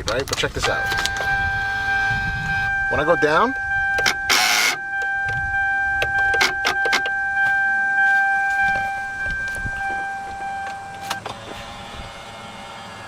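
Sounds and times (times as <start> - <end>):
electric motor whining: 0.6 - 13.0
sharp clicks and knocks: 4.0 - 7.6.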